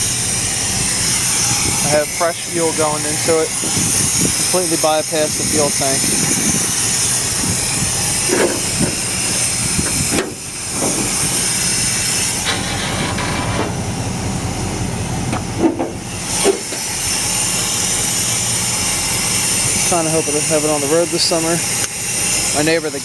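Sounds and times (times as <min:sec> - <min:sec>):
car engine idling: 0:06.8 - 0:19.4
engine misfire pops: 0:09.8 - 0:11.4, 0:12.4 - 0:13.8, 0:15.3 - 0:16.8.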